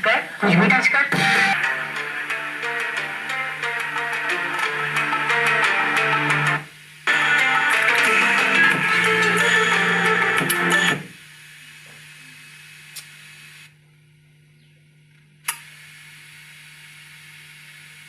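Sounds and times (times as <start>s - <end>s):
song through speakers: 0.4s - 11.1s.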